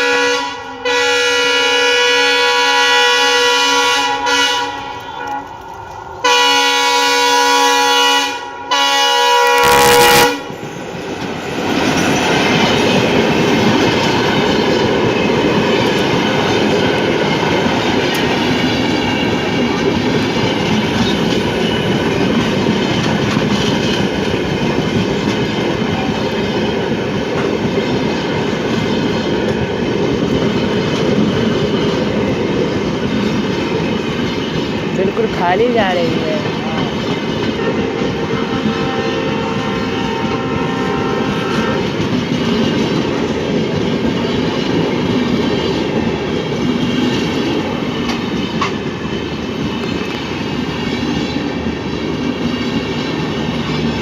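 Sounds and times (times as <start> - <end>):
diesel locomotive horn blasts: 0.0 - 10.6, 37.5 - 42.0
train wheels clattering over rails: 10.4 - 54.0.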